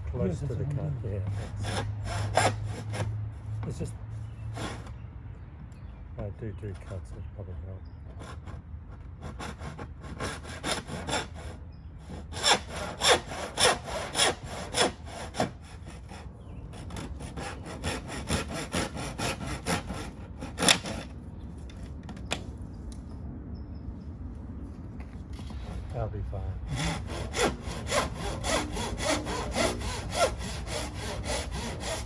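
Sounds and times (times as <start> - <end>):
hand saw cutting pipe: 1.1 - 3.2, 4.5 - 4.9, 9.2 - 21.2, 25.4 - 32.0.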